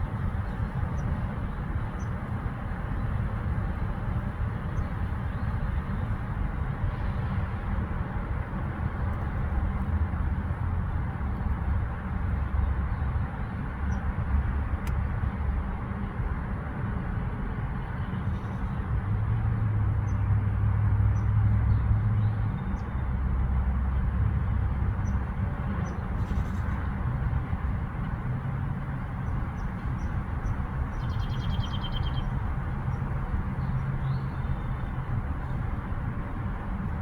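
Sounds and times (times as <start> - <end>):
small birds chirping: 29.3 - 32.4.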